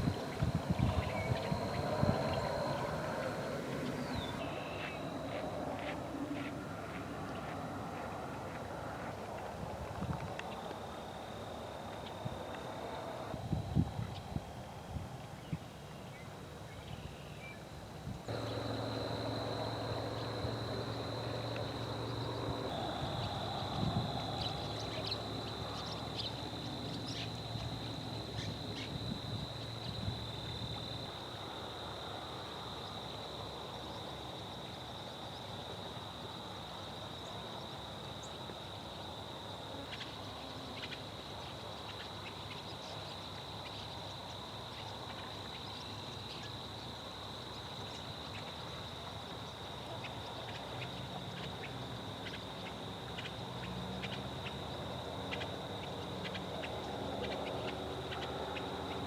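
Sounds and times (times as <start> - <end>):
low motor hum: 18.3 - 28.3.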